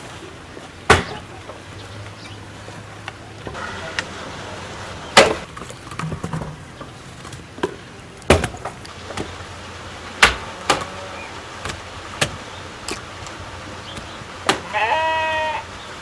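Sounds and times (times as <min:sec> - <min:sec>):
wood being struck: 0:00.9 - 0:01.2, 0:05.2 - 0:06.8, 0:07.6 - 0:09.4, 0:10.1 - 0:10.9, 0:11.6 - 0:14.7.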